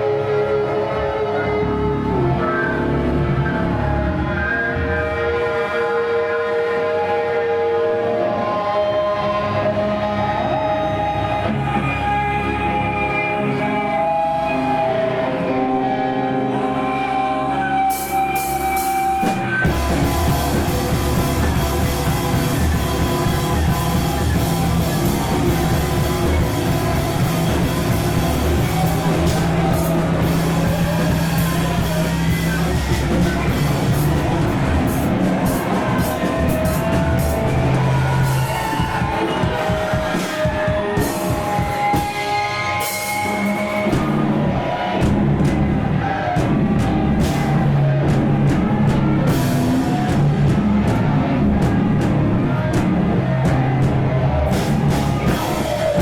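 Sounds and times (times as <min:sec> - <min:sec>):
bass guitar: 0:00.0 - 0:56.0
electric guitar: 0:00.0 - 0:56.0
drum kit: 0:17.9 - 0:56.0.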